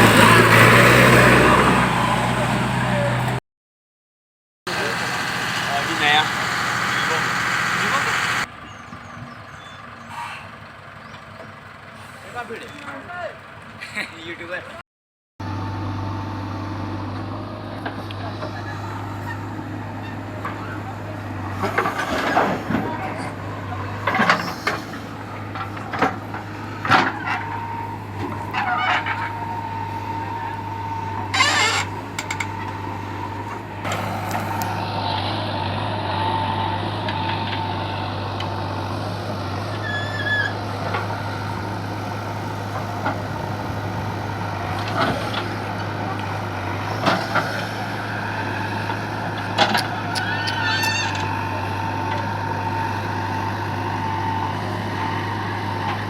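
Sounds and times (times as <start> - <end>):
diesel engine running: 0.0 - 3.4, 4.7 - 14.8, 15.4 - 56.0.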